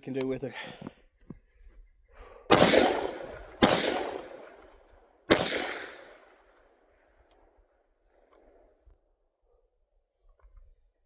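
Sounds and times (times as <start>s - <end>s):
rifle shots echoing: 2.5s - 6.6s.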